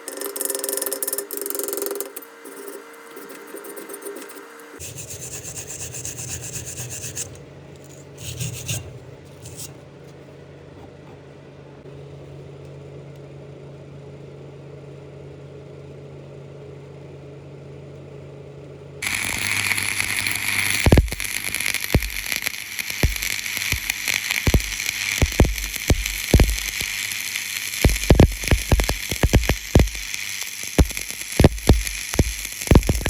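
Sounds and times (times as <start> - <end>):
welding arc crackling: 0.0 - 7.4, 19.0 - 33.0
fast rubbing strokes on metal: 0.0 - 9.8
steady low hum: 0.0 - 14.3, 18.8 - 33.0
short scrapes: 2.4 - 11.8.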